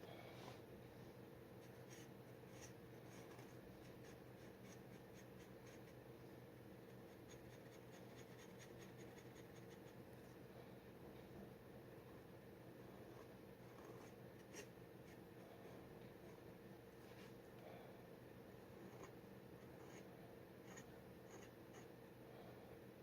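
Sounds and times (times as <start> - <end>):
low steady hum: 0.0 - 23.0
dip pen scratching on paper: 1.6 - 6.0, 7.1 - 10.0, 19.7 - 20.0, 20.6 - 21.9.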